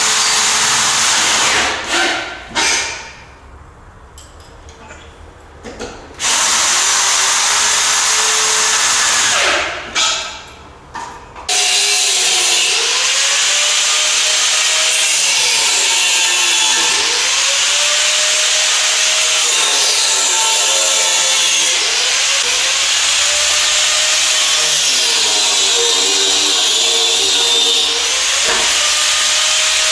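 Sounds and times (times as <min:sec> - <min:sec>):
power tool motor running: 0:11.5 - 0:29.9.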